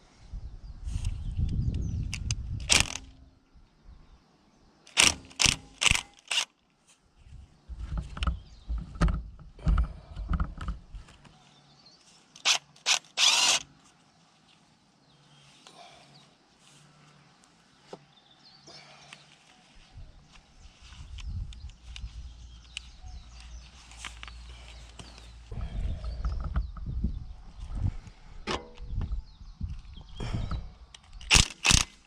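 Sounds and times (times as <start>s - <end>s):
metallic clicks and clanks: 2.2s - 3.1s
ratchet clicking: 2.6s - 3.1s, 4.9s - 6.5s, 31.0s - 32.0s
low rumbling: 24.4s - 31.4s.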